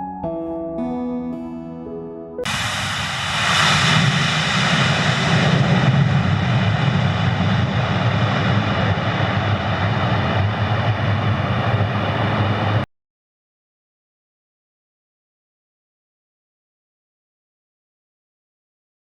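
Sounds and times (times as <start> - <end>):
engine drone: 2.4 - 12.9.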